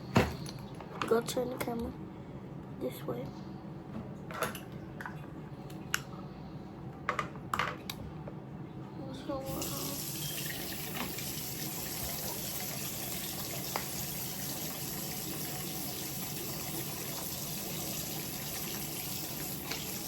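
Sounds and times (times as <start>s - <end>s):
sink tap running: 9.5s - 20.0s.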